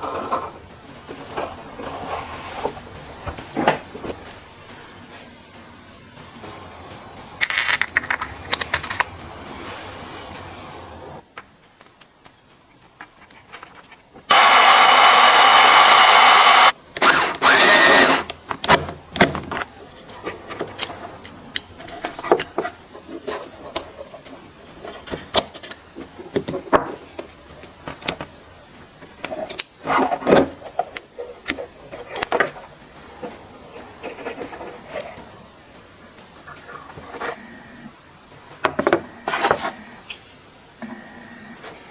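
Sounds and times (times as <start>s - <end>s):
electric screwdriver motor: 14.3s - 18.3s.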